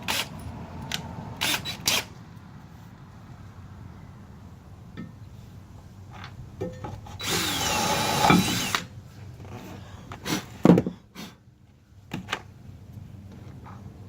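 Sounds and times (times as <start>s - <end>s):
power drill running: 1.4s - 2.1s, 7.2s - 8.9s.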